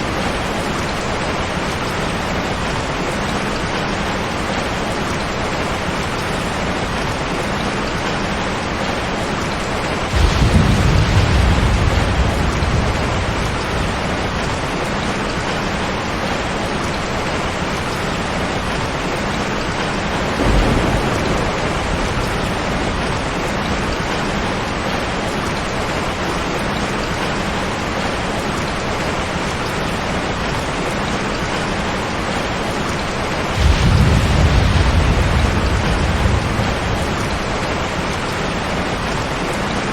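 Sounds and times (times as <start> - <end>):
heavy rain on a tin roof: 0.0 - 39.9
thunder rolling: 10.0 - 16.3, 19.7 - 25.4, 33.4 - 39.5.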